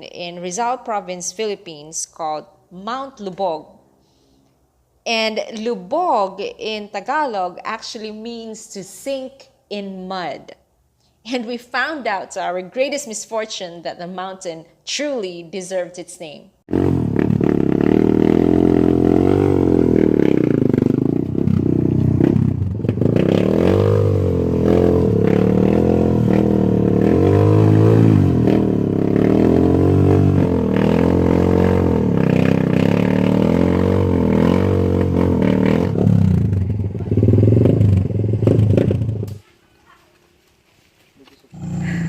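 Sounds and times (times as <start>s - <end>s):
vehicle engine revving: 16.7s - 39.4s, 41.6s - 42.0s.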